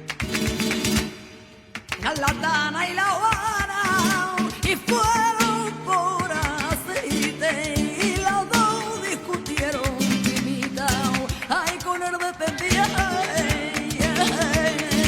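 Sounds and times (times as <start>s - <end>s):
acoustic guitar: 0.0s - 15.0s
person singing flamenco: 0.0s - 15.0s.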